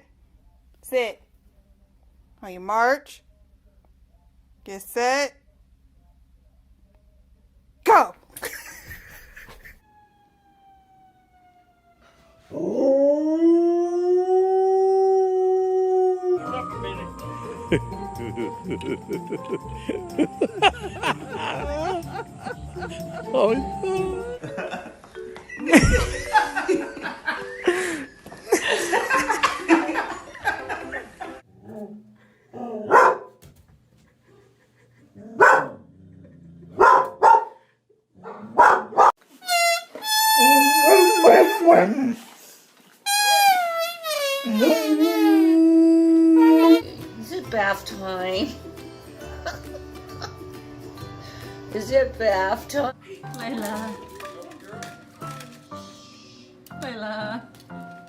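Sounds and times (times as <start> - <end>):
faint falling whine: 9.8 - 12.6
dog howling: 12.4 - 16.7, 45.2 - 46.9
dog barking: 32.8 - 33.4, 35.4 - 35.8, 36.7 - 37.6, 38.2 - 39.2.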